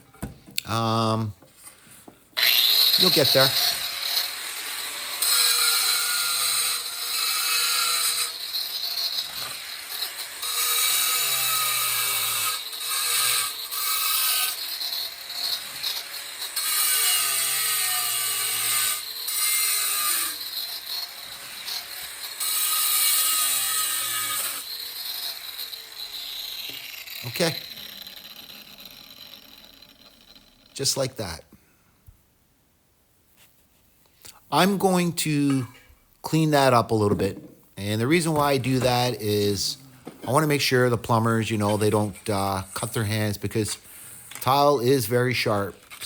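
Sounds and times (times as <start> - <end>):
angle grinder cutting stone tile: 2.4 - 31.0, 38.1 - 46.0.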